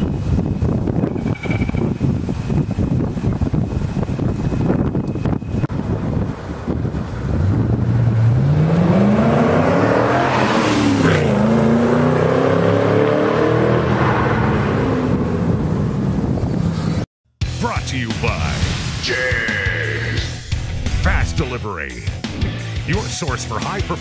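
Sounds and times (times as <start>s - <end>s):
car engine accelerating hard: 6.7s - 16.4s.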